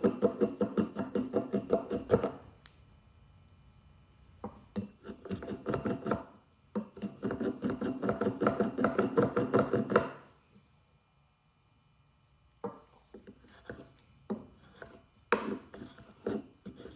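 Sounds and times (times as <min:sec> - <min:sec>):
hand plane scraping wood: 0:00.0 - 0:02.4, 0:04.8 - 0:06.3, 0:06.9 - 0:10.1, 0:14.6 - 0:16.9.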